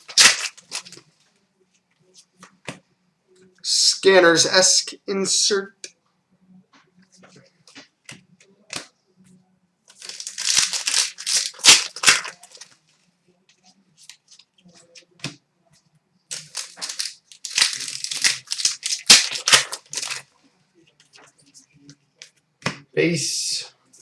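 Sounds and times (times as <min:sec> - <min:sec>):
foil wrapper crinkling: 0:00.0 - 0:01.0, 0:09.9 - 0:12.7, 0:16.3 - 0:20.3.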